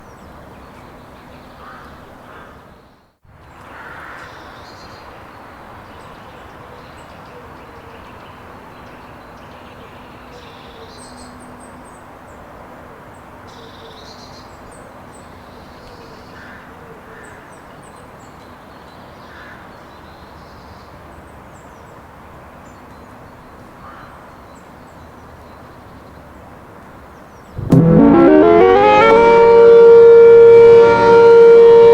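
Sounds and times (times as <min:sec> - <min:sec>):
outdoor background noise: 0:00.0 - 0:31.9.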